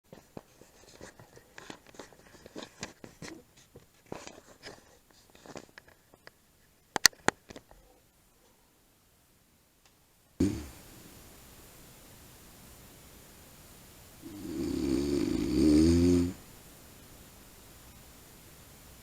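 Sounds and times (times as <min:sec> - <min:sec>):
scratching and rustling: 0:00.0 - 0:08.6.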